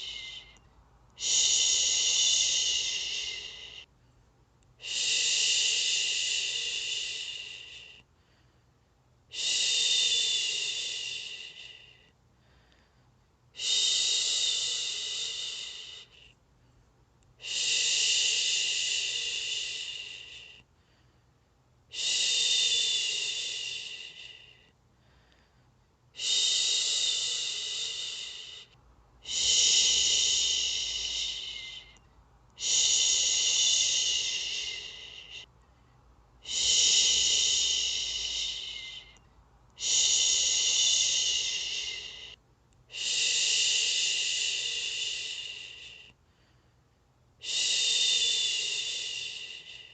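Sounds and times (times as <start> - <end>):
person shushing: 0.0 - 0.6, 1.2 - 3.8, 26.2 - 32.0, 32.6 - 35.5, 36.4 - 39.2, 39.8 - 46.0.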